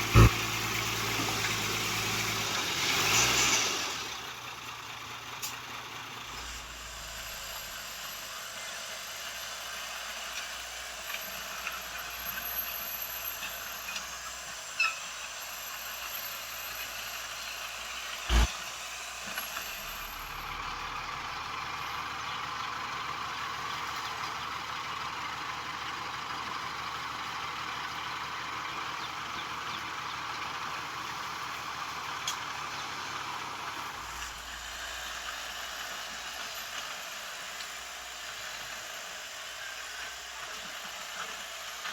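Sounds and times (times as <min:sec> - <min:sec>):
earthmoving machinery running: 0:00.0 - 0:02.5, 0:06.2 - 0:22.0
short squeak: 0:14.8 - 0:15.1.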